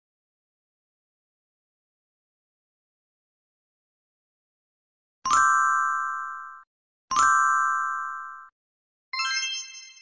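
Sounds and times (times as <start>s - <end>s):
bright bell-like chime: 9.2s - 10.0s.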